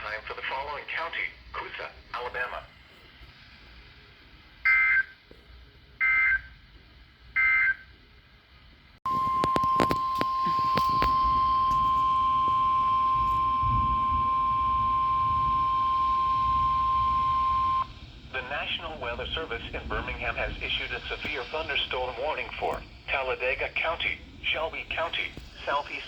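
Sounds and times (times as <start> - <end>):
crackly radio static: 0.0 - 6.0, 9.1 - 26.0
two-tone digital data squawks: 9.1 - 17.9
single-pitch warning alarm tone: 9.1 - 18.0.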